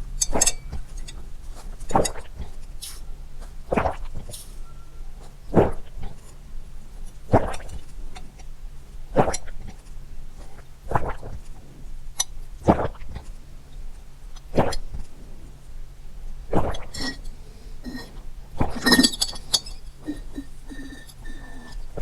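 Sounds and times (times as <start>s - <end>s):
person swallowing water: 16.5s - 17.2s.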